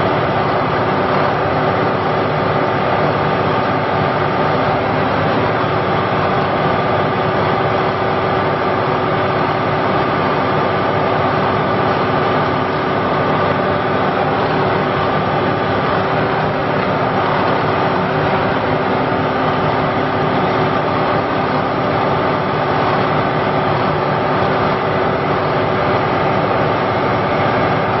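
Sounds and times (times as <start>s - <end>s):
diesel engine running: 0.0s - 28.0s.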